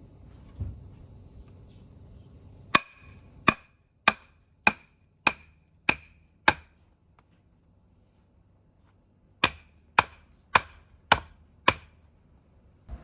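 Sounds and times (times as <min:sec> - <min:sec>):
crickets chirping: 0:00.0 - 0:13.0
hand tool striking wood: 0:02.7 - 0:06.8, 0:09.4 - 0:12.0.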